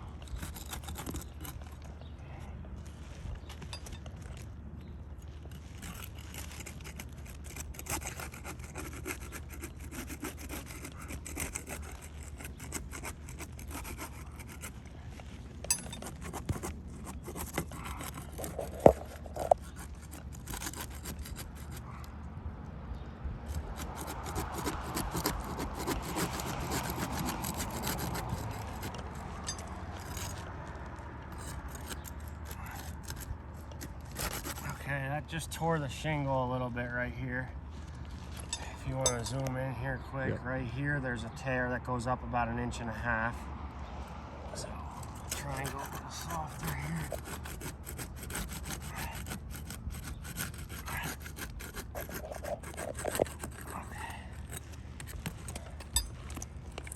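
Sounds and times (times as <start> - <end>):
tool scraping under roof shingles: 0.0 - 2.1, 2.8 - 22.0, 23.5 - 35.1, 45.0 - 56.9.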